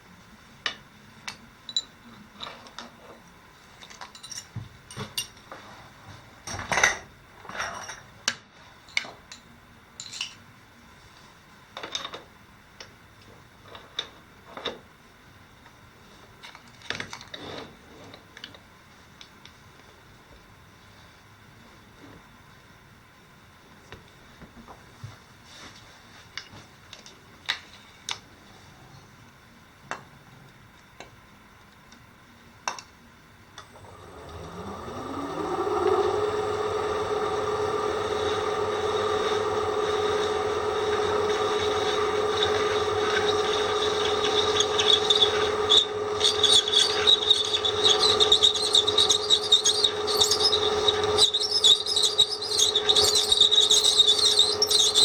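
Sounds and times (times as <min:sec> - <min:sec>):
electric drill running: 0:33.8 - 0:55.0
drill bit squealing and scraping: 0:37.5 - 0:55.0.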